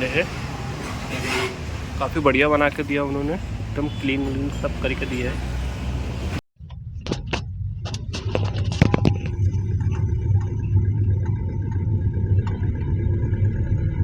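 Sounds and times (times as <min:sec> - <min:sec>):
car engine low rumble: 0:00.0 - 0:14.0
sharp clicks and knocks: 0:06.7 - 0:10.6.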